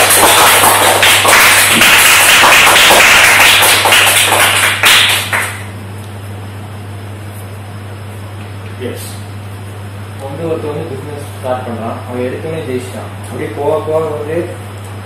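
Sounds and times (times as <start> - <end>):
people applauding: 0.0 - 5.7.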